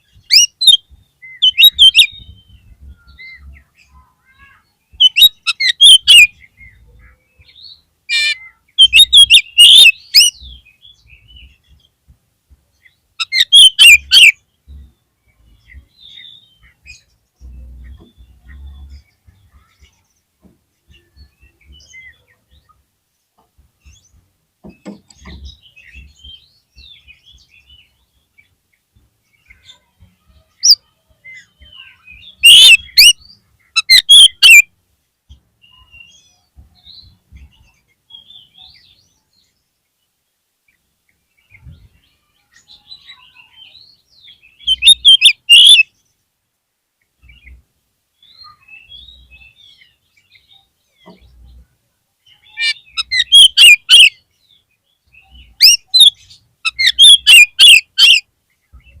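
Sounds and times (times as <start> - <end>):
bird chirps and whistles: 0.3 - 0.8, 1.4 - 2.4, 5.0 - 6.3, 8.1 - 10.4, 13.2 - 14.4, 32.3 - 33.2, 33.8 - 34.6, 44.6 - 45.9, 52.6 - 54.2, 55.6 - 58.2
rapid sharp bird notes: 32.4 - 33.2, 33.8 - 34.6.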